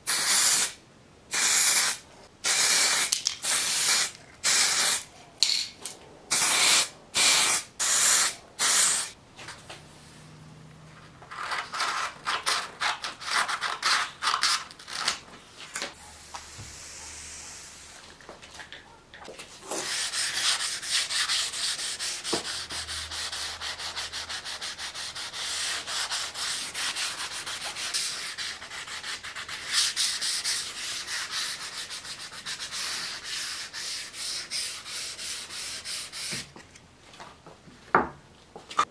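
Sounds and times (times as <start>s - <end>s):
sanding metal by hand: 19.8s - 36.4s.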